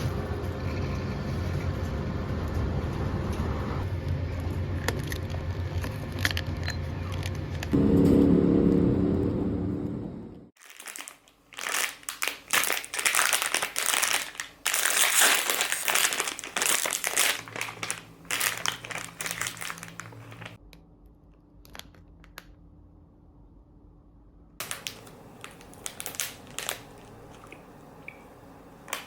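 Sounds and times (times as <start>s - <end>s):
packaging crinkling: 10.6s - 20.6s, 24.6s - 27.7s.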